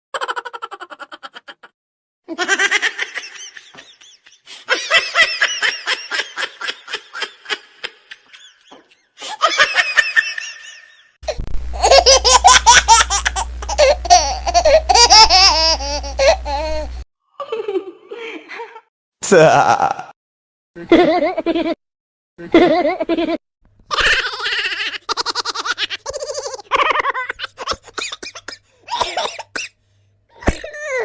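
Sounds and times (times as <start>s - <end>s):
high-pitched laughter: 0.2s - 1.7s, 2.3s - 11.1s, 11.8s - 18.9s, 22.4s - 27.9s
steady low hum: 11.2s - 17.0s.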